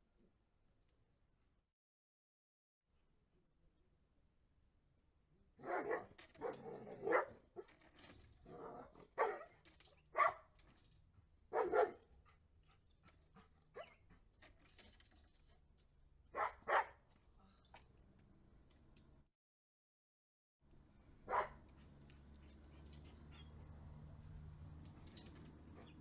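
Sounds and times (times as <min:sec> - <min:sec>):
puppy barking: 0:05.6 - 0:07.4, 0:08.6 - 0:10.5, 0:11.5 - 0:12.1, 0:13.7 - 0:14.0, 0:16.3 - 0:17.0, 0:21.3 - 0:21.6.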